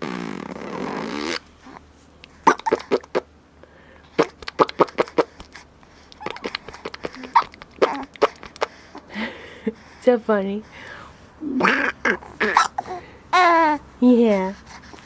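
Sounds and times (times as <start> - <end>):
baby mouth noises and grunts: 0.0 - 3.3, 4.1 - 9.0, 11.4 - 12.9
lip-buzzing raspberry: 0.0 - 3.3, 4.1 - 9.0.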